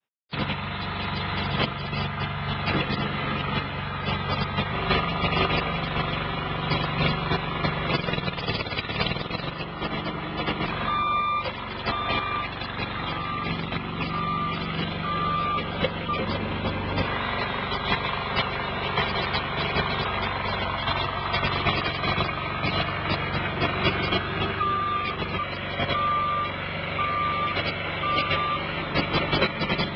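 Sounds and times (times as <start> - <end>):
loader engine running: 0.3 - 29.9
short beeps: 10.9 - 12.5, 13.2 - 16.4, 24.6 - 28.7.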